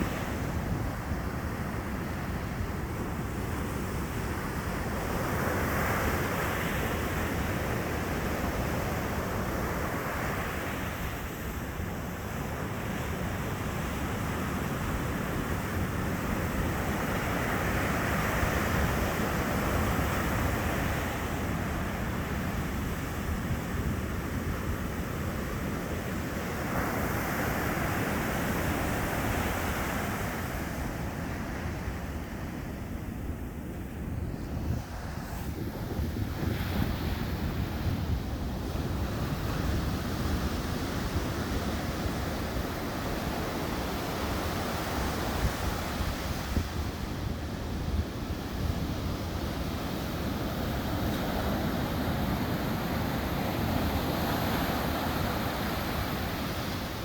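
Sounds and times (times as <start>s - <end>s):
waves breaking on a beach: 0.0s - 57.0s.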